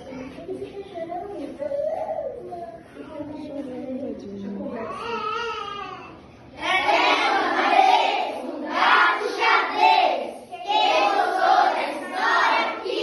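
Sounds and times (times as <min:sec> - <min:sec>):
children singing in chorus: 0:06.6 - 0:13.0.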